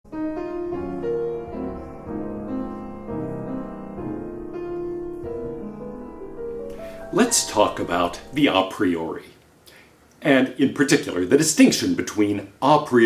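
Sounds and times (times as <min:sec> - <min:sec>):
slow piano melody: 0:00.1 - 0:09.1.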